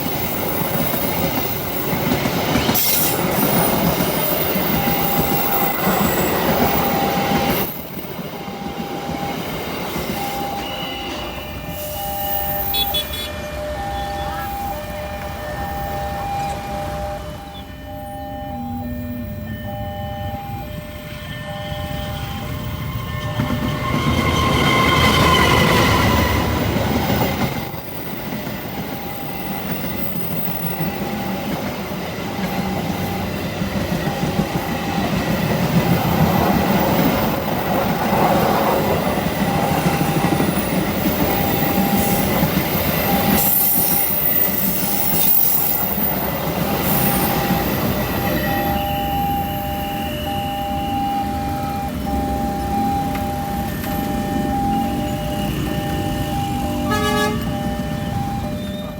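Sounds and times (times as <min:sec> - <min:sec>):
level-crossing alarm beeping: 0:00.0 - 0:58.9
train wheels rumbling on rails: 0:00.0 - 0:58.9
train horn: 0:10.1 - 0:27.4, 0:46.8 - 0:58.9
high-pitched wheel squeal: 0:17.4 - 0:27.5, 0:41.6 - 0:52.2.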